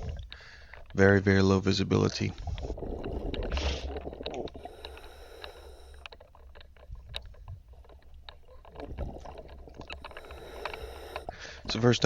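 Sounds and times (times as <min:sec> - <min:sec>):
sharp clicks and crackles: 0:02.1 - 0:11.4
low underwater rumble: 0:02.3 - 0:05.5, 0:06.2 - 0:11.7.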